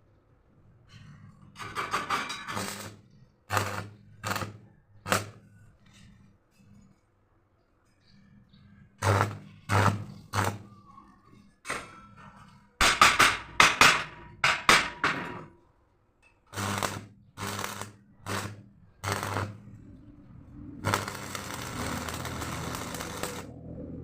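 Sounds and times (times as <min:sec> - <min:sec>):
arc welding crackle: 0:01.9 - 0:05.4, 0:09.0 - 0:10.7, 0:16.5 - 0:19.6, 0:20.8 - 0:23.5
metal knocks: 0:12.8 - 0:15.5.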